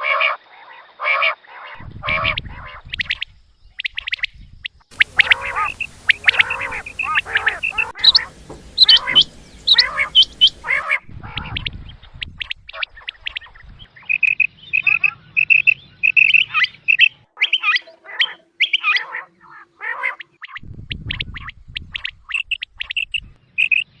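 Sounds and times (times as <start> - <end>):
quail calling: 0.0 - 24.0
low rustling noise: 1.8 - 12.7.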